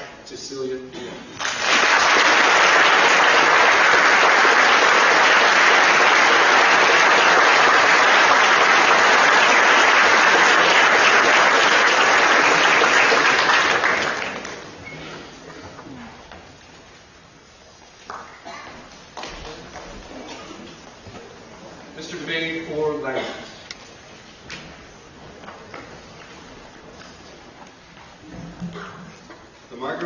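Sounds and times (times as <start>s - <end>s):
audience applauding: 1.4s - 14.8s.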